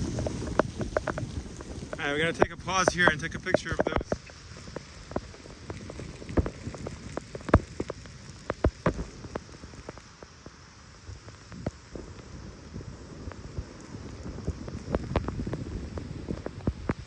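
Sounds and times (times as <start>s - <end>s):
blizzard wind hissing: 0.0s - 17.0s
sharp taps and clicks: 1.9s - 5.4s, 7.2s - 10.0s.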